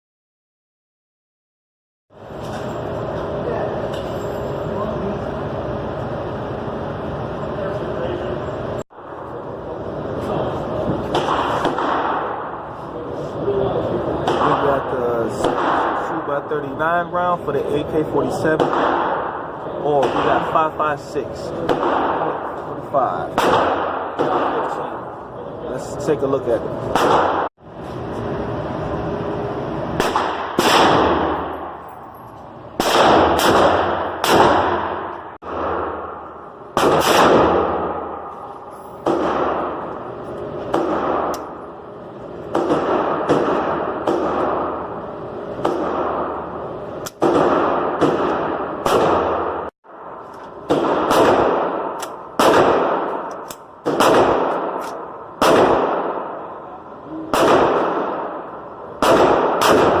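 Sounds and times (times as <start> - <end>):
rifle shots echoing: 11.0 - 12.8, 14.1 - 17.0, 18.2 - 25.2, 26.9 - 27.5, 30.0 - 32.0, 32.8 - 41.7, 42.4 - 56.7, 57.3 - 60.0.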